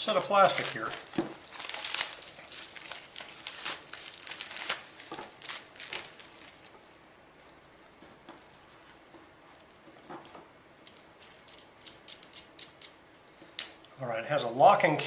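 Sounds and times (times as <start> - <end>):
plastic packaging crinkling: 0.0 - 10.0.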